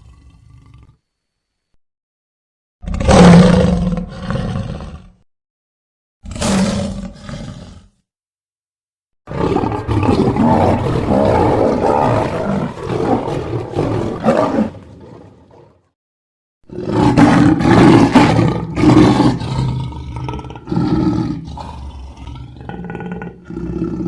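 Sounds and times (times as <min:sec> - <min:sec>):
lion roaring: 0:00.0 - 0:01.0, 0:02.8 - 0:05.2, 0:06.2 - 0:08.0, 0:09.3 - 0:15.9, 0:16.7 - 0:24.0.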